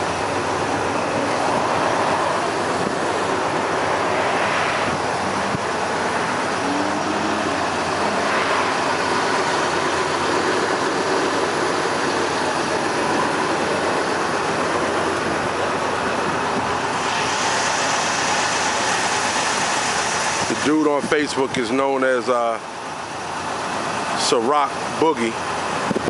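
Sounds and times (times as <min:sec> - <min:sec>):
road traffic noise: 0:00.0 - 0:26.0
vehicles passing: 0:00.0 - 0:26.0.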